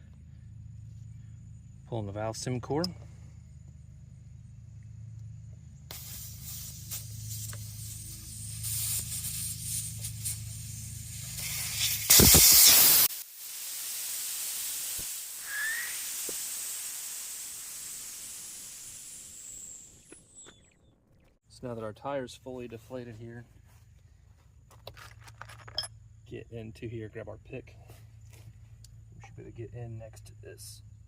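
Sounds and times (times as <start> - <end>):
low hum: 0.0 - 11.4
loud rush of air: 5.9 - 19.9
air hissing from tire valve: 5.9 - 20.2.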